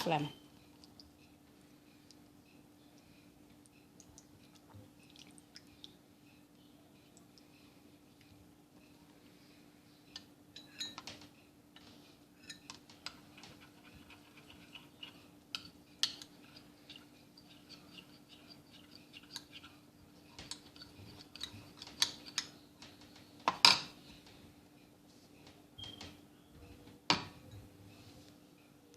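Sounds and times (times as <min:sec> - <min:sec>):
faint steady hum: 0:00.0 - 0:28.9
utensils clinking against dishes: 0:10.5 - 0:11.1, 0:12.4 - 0:12.8.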